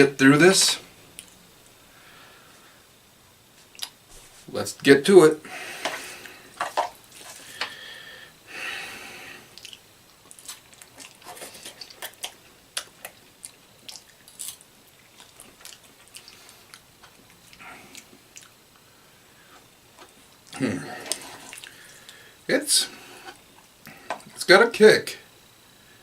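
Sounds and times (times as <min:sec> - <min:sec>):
wet chewing clicks: 0:09.6 - 0:18.6, 0:21.5 - 0:22.2.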